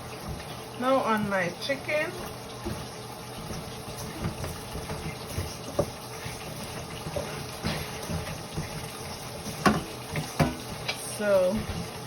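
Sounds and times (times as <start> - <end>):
hands rubbing wet raw chicken: 2.1 - 10.3.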